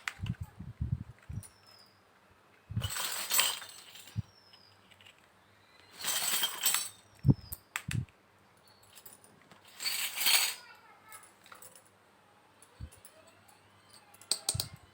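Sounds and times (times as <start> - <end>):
toy pieces clinking and rattling: 9.7 - 10.6.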